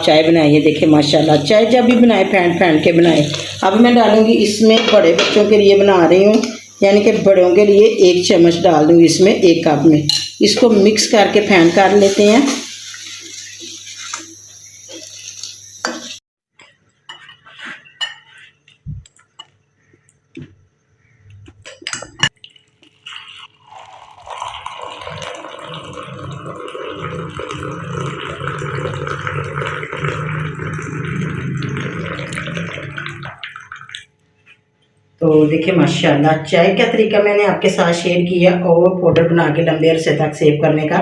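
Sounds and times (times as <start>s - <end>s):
person speaking: 0.0s - 12.6s
spoon clinking against cup: 10.1s - 10.4s.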